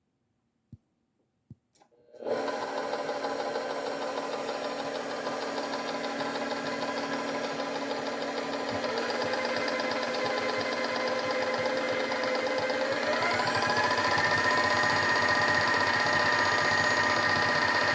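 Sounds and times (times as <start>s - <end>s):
electric motor whine: 4.2s - 17.9s.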